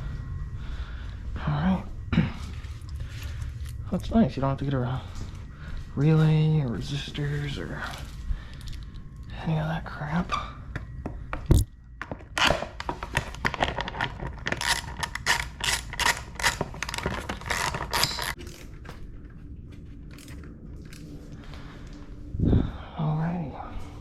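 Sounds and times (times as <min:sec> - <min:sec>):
faint steady hum: 0:00.0 - 0:24.0
hand tools clicking and scraping: 0:12.4 - 0:18.7.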